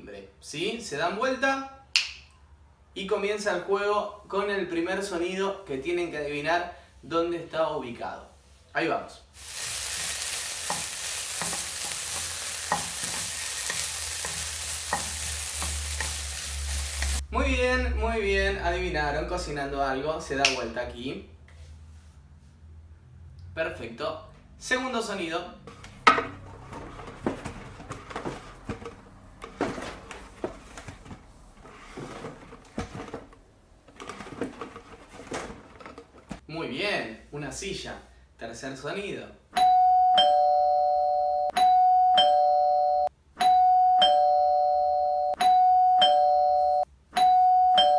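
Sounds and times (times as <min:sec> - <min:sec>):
food frying in hot oil: 0:09.4 - 0:17.2
chair legs scraping on floor: 0:25.6 - 0:36.4.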